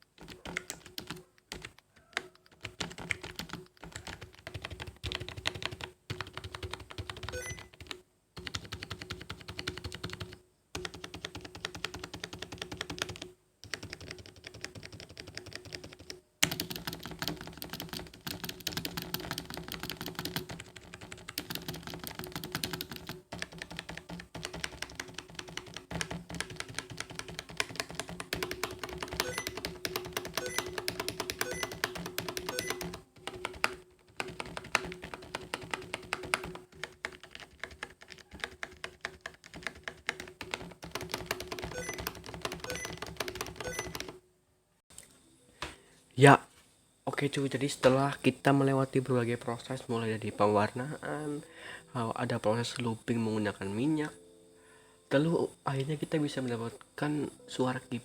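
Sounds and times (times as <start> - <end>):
fast typing on keyboard: 0.0 - 44.2.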